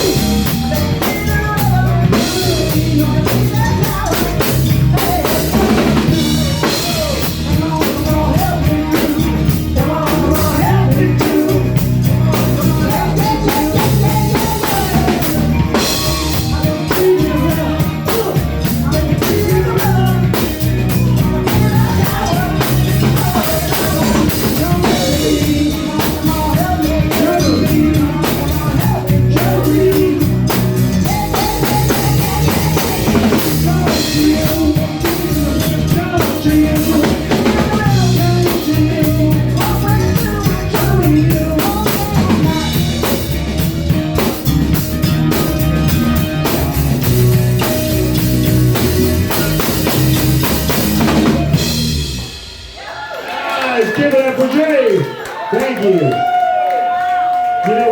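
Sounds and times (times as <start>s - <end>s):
drum kit beat: 0.0s - 57.9s
live band playing: 0.0s - 57.9s.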